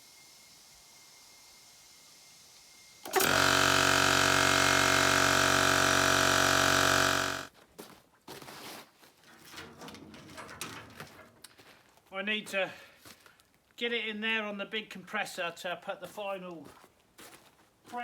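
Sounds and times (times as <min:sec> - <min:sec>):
small motor running: 0:02.6 - 0:07.5.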